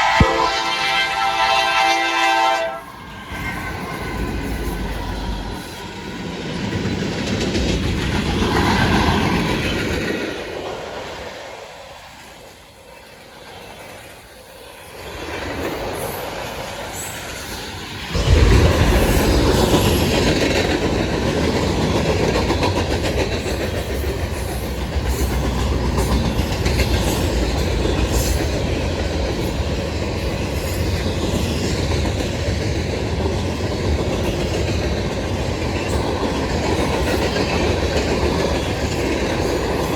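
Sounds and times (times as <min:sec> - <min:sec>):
freight train rumbling past: 0:00.0 - 0:39.9
wheels clacking over rail joints: 0:03.4 - 0:11.2, 0:15.0 - 0:39.9.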